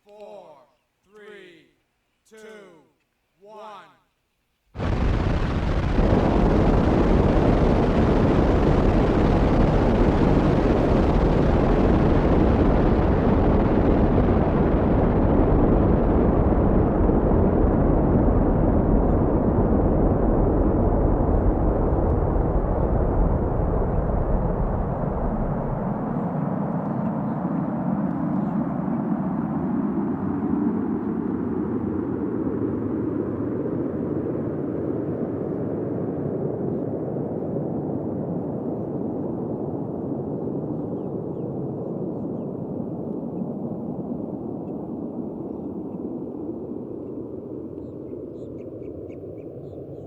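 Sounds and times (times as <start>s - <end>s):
rocket engines roaring: 4.8s - 36.8s.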